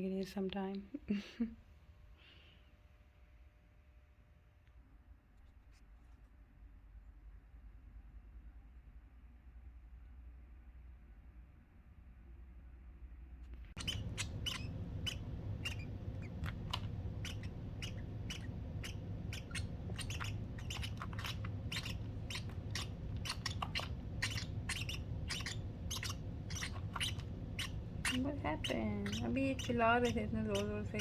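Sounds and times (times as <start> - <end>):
steady low hum: 12.4 - 31.0
baby birds squeaky begging calls: 13.8 - 31.0.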